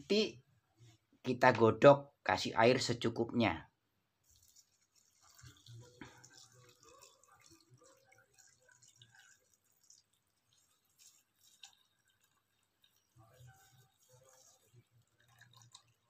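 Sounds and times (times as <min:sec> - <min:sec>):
water trickling into a pot: 0:04.2 - 0:16.0.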